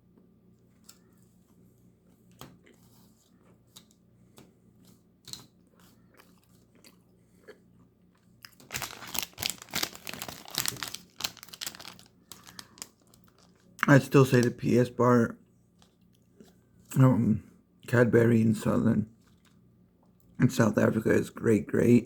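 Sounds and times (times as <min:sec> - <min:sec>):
chocolate crunching: 0:02.2 - 0:14.6.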